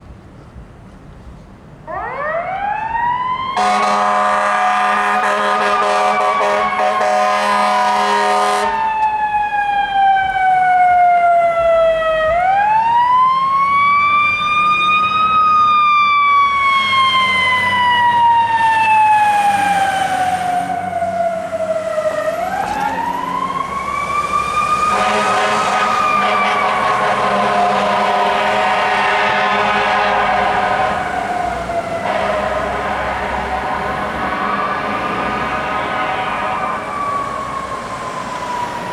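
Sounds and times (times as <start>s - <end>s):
fire engine siren wailing: 1.9s - 38.9s
air horn blast: 3.6s - 8.9s, 24.8s - 37.6s.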